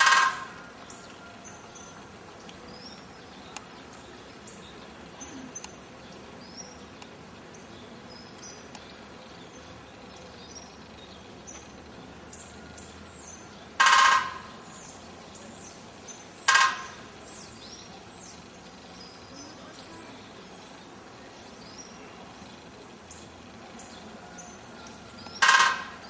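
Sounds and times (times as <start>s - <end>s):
woodpecker drumming on metal: 0.0s - 2.2s, 12.8s - 15.0s, 16.1s - 19.2s, 24.3s - 26.0s
small birds chirping: 0.0s - 26.0s.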